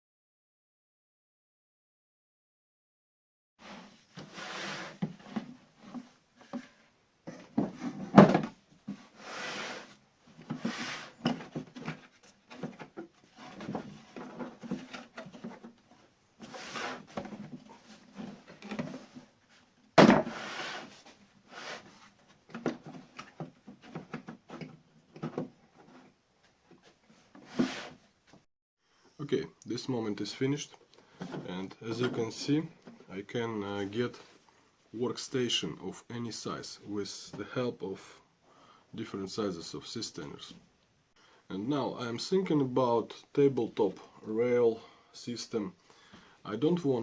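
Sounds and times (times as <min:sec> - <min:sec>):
objects scraping and sliding: 0:03.6 - 0:29.1
objects knocking on workbench: 0:07.3 - 0:08.5, 0:20.0 - 0:20.4.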